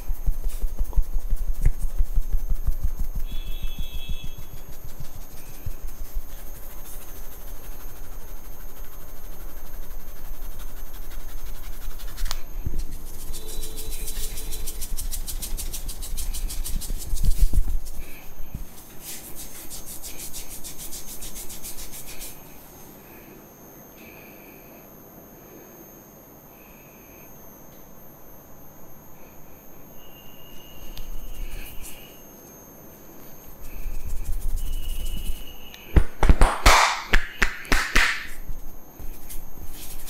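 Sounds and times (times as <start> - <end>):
hands patting head: 0.0 - 22.4, 33.6 - 40.0
scratchy rubbing on hair: 0.0 - 22.5, 31.1 - 32.2, 33.2 - 35.7, 36.3 - 40.0.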